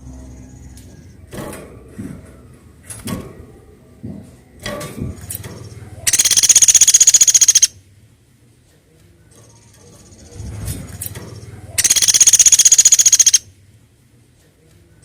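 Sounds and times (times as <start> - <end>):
knocks and rustles: 1.3 - 6.0, 10.4 - 11.7
woodpecker rattling trill: 5.6 - 7.8, 11.2 - 13.5.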